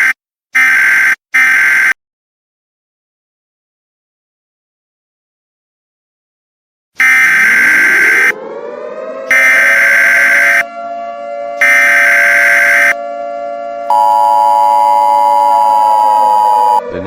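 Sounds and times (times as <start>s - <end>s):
siren winding up: 7.0s - 17.0s
two-tone attention signal: 9.3s - 17.0s.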